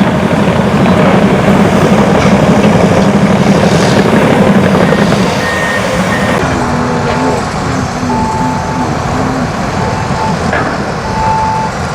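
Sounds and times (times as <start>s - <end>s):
heavy construction machinery rumble: 0.0s - 11.9s
short high beeps: 4.8s - 6.4s, 8.1s - 9.0s.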